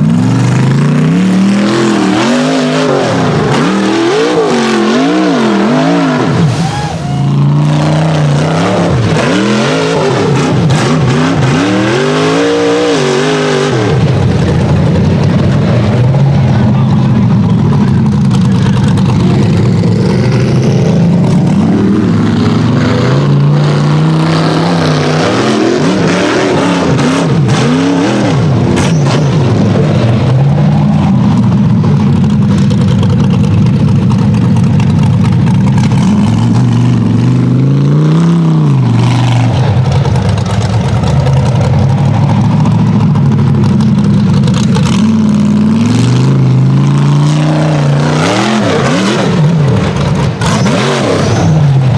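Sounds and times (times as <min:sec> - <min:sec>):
engine revving hard: 0:00.0 - 0:14.2, 0:18.5 - 0:31.1, 0:44.6 - 0:51.9.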